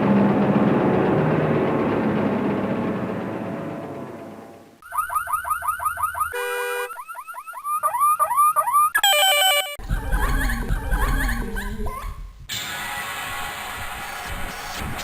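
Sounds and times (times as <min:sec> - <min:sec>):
dense sound with low rumble: 0:00.0 - 0:04.8
rumbling noise: 0:00.0 - 0:04.8
car alarm tones: 0:04.8 - 0:09.8.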